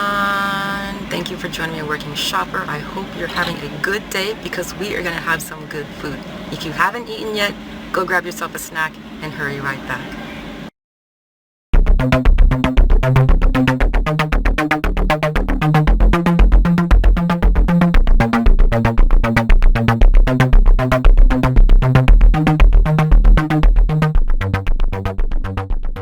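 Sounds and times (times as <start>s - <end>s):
electronic synthesizer music: 11.8s - 26.0s.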